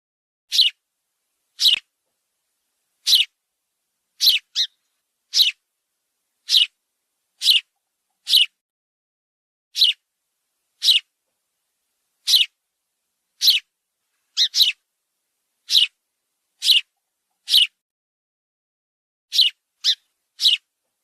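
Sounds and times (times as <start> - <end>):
bird calling high-pitched: 0.5 - 0.8, 1.6 - 1.8, 3.0 - 3.3, 4.2 - 5.6, 6.4 - 6.8, 7.4 - 8.6, 9.8 - 10.0, 10.8 - 11.1, 12.2 - 12.6, 13.4 - 13.7, 14.4 - 14.8, 15.6 - 16.0, 16.6 - 17.8, 19.3 - 20.7.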